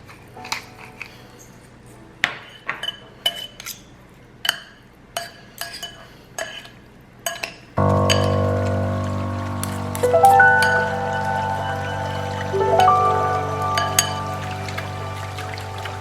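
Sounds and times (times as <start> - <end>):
background music: 7.8 - 16.0.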